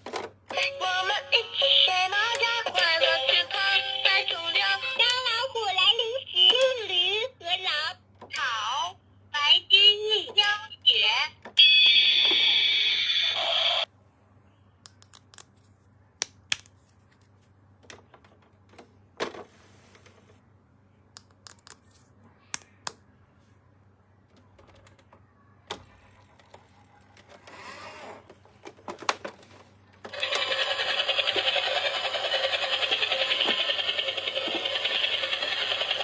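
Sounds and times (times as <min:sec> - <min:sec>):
electronic toy sound: 0:00.6 - 0:06.6, 0:11.6 - 0:13.9, 0:30.1 - 0:36.0
toy rattling buzz: 0:30.1 - 0:36.0.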